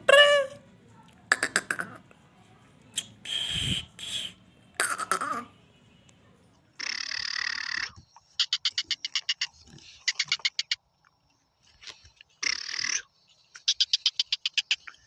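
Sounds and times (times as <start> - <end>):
bird calling with grating pulses: 6.8 - 10.8, 11.7 - 15.0.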